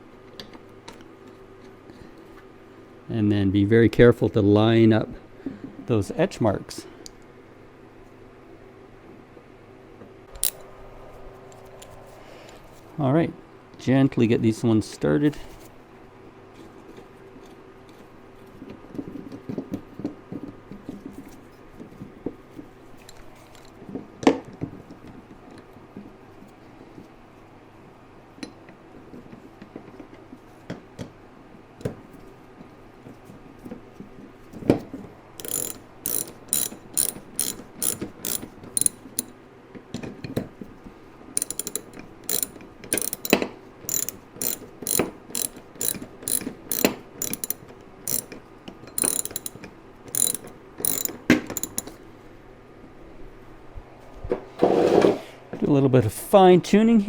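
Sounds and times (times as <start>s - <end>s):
ratchet wrench clicking: 10.4s - 10.6s, 35.4s - 39.3s, 41.4s - 48.4s, 49.0s - 52.0s.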